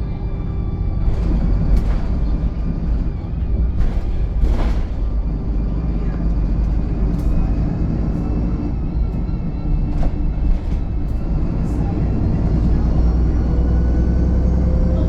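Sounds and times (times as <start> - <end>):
bus engine drone with whine: 0.0 - 15.0
short knocks or rattles: 1.0 - 7.9.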